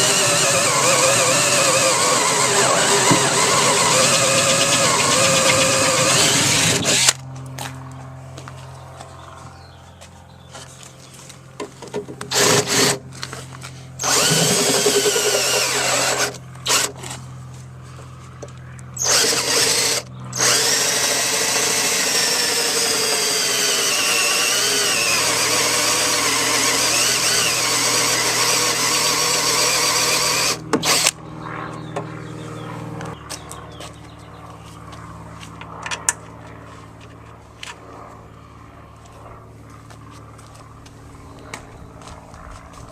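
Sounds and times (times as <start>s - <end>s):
cordless drill boring into metal: 0.0s - 7.2s, 12.3s - 13.0s, 14.0s - 17.0s, 19.0s - 31.1s.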